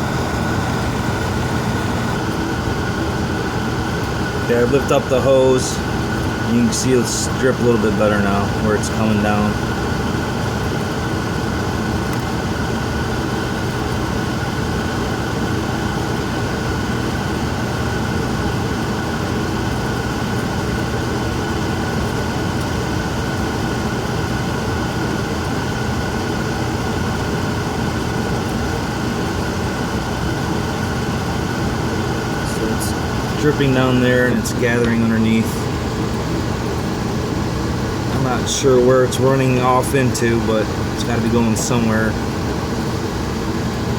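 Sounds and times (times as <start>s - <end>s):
furnace blower drone: 0.0s - 43.9s.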